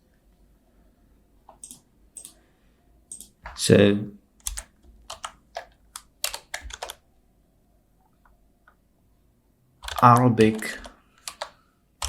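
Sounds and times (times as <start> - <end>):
sharp clicks: 1.5 - 2.4, 3.1 - 3.6, 4.4 - 7.0, 9.8 - 11.6.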